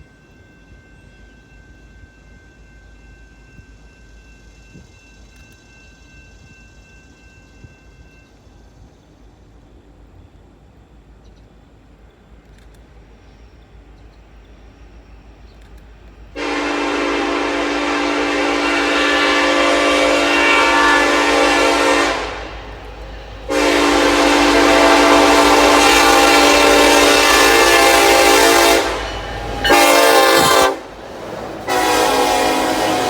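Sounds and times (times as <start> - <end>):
locomotive air horn blasts: 16.4 - 22.8, 23.4 - 31.0, 31.6 - 33.0.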